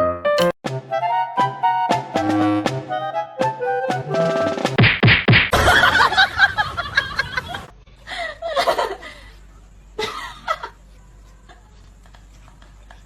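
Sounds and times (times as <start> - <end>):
people laughing: 5.6 - 9.4.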